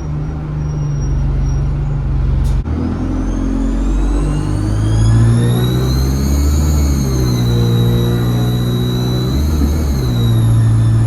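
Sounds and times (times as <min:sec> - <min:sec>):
diesel engine drone: 0:00.0 - 0:11.0
high turbocharger whistle: 0:02.8 - 0:11.0.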